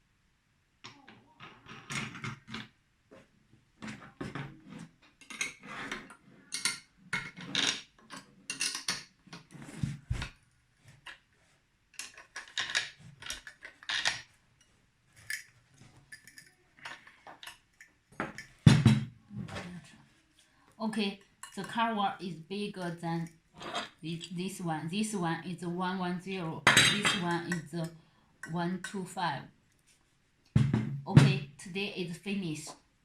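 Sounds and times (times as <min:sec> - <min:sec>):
metal parts clicking and clinking: 0:06.5 - 0:09.1, 0:15.2 - 0:18.6.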